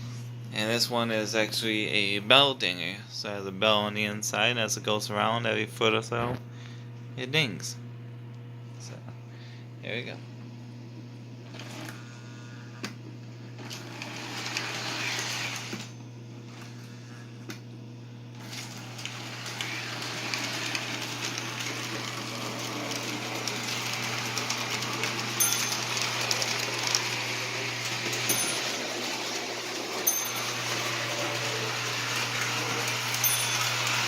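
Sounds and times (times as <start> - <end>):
steady low hum: 0.0 - 13.7
toy train motor and wheels: 13.7 - 15.9, 18.4 - 34.0
toy train bell dinging: 25.4 - 26.4, 28.2 - 29.0, 30.0 - 31.0, 33.1 - 34.0.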